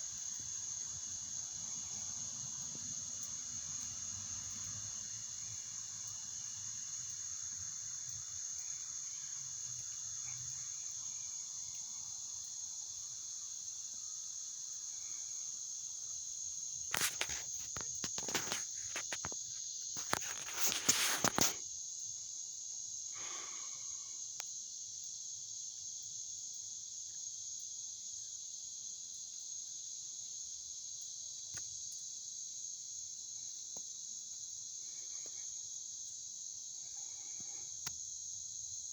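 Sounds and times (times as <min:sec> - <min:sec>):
crickets chirping: 0:00.0 - 0:38.9
loud close rustling: 0:16.9 - 0:19.3, 0:20.0 - 0:21.6.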